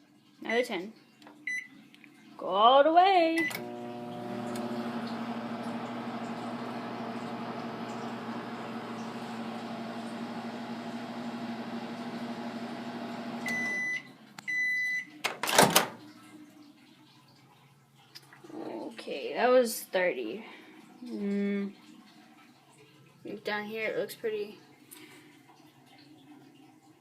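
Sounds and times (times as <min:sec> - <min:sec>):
microwave oven humming: 0:03.4 - 0:15.0.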